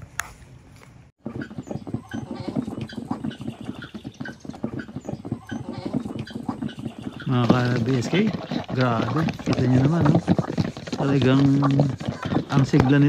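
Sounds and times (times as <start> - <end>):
chicks peeping: 1.2 - 7.8
chickens clucking: 1.2 - 13.0
chickens scrabbling at feed: 1.2 - 13.0.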